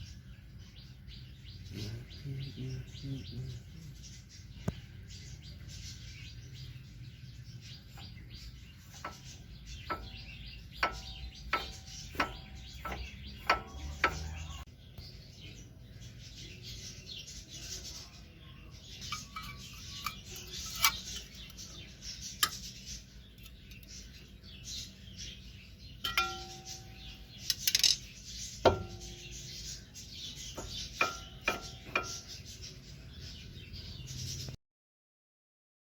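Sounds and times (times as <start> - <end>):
metal clinking and tapping: 8.9 - 14.6, 19.0 - 21.6, 26.0 - 29.5, 30.5 - 32.4.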